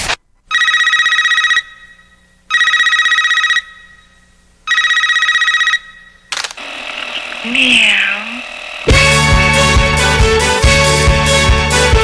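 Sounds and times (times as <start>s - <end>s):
telephone ringing: 0.5s - 9.0s.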